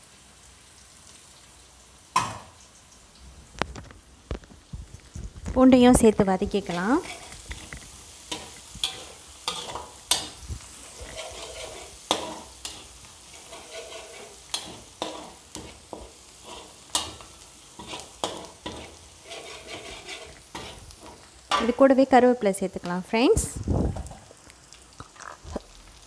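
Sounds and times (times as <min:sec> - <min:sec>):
onion and garlic sizzling in butter: 0:00.0 - 0:26.0
spoon scraping against pan: 0:06.4 - 0:21.8.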